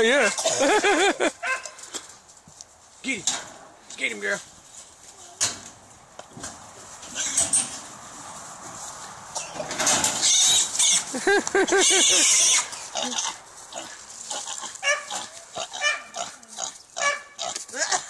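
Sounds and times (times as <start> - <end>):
dog barking: 1.4 - 1.8, 14.8 - 15.2, 15.8 - 16.2, 17.0 - 17.3
hog squealing: 11.8 - 13.4, 14.4 - 16.3
grunts: 17.6 - 18.0.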